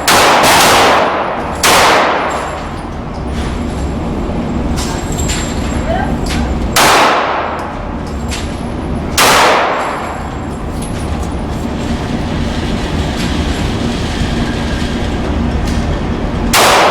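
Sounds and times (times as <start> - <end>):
pistol shot: 0.0 - 2.4, 6.8 - 7.6, 9.2 - 10.0, 16.5 - 16.9.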